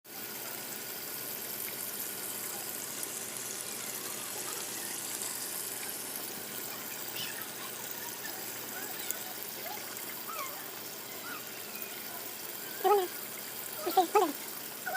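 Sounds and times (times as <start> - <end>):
fountain water splashing: 0.1 - 14.9.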